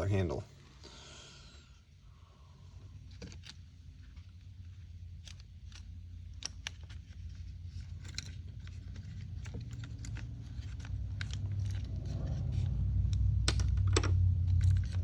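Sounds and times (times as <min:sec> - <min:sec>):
low steady hum: 0:00.0 - 0:15.0
plastic and metal parts clicking: 0:03.1 - 0:15.0.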